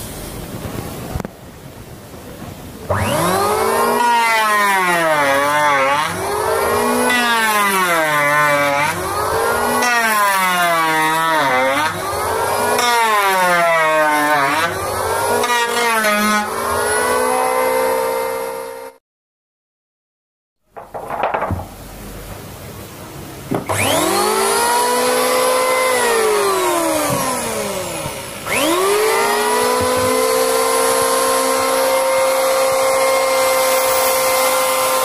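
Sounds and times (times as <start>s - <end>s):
wood planer running: 2.9s - 19.0s, 23.6s - 35.0s.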